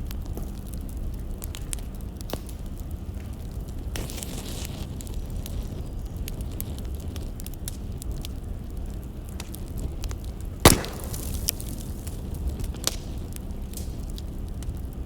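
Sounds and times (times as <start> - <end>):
firewood crackling: 0.0 - 15.0
steady low rumble: 0.0 - 15.0
loud sharp pop: 10.7 - 11.7.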